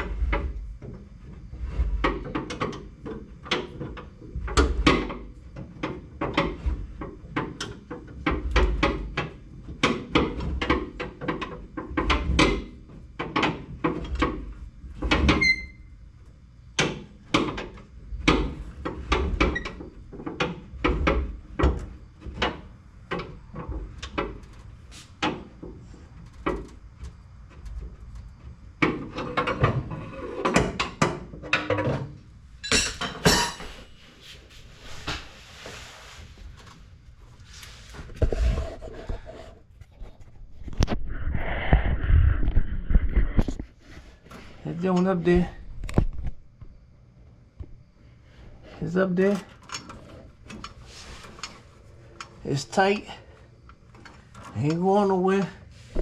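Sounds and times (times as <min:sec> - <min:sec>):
hand tool knocks and clanks: 0:30.4 - 0:33.8.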